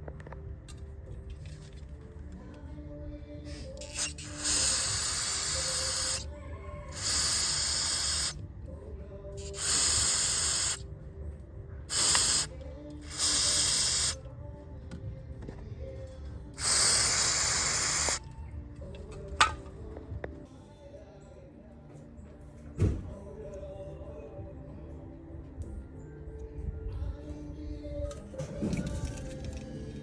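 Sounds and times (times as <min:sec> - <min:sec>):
aerosol spraying hiss: 0:03.5 - 0:06.3, 0:06.9 - 0:08.4, 0:09.4 - 0:10.8, 0:11.9 - 0:14.2, 0:16.6 - 0:18.2.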